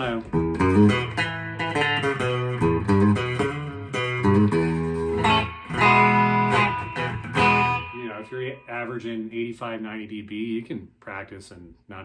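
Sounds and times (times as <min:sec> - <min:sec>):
clean electric guitar: 0:00.0 - 0:09.0.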